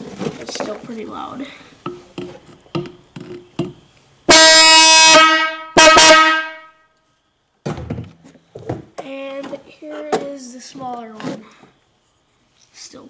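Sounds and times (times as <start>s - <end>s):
truck horn blasts: 4.3s - 6.9s.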